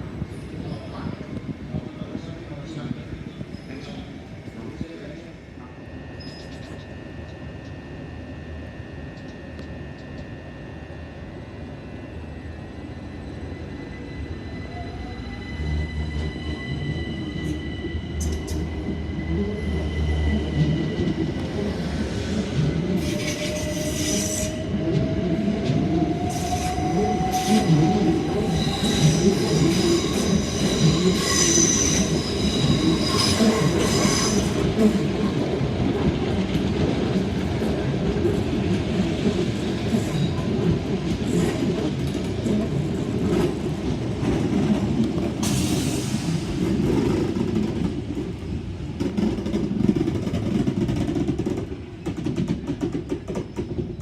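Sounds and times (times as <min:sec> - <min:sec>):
wheels squealing on rails: 0:13.3 - 0:25.4, 0:26.2 - 0:35.0.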